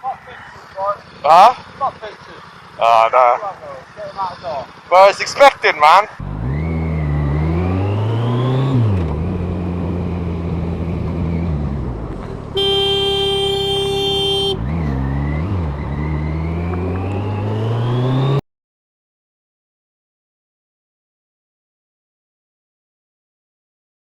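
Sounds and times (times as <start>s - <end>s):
motorcycle engine: 0.0s - 18.4s
horn steady note: 12.6s - 14.7s.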